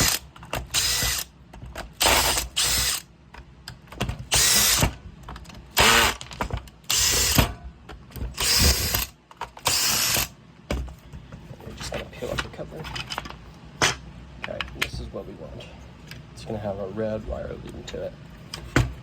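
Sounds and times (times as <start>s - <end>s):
screwdriver ratchet clicking: 0.0s - 1.3s, 4.3s - 4.9s, 8.4s - 10.3s.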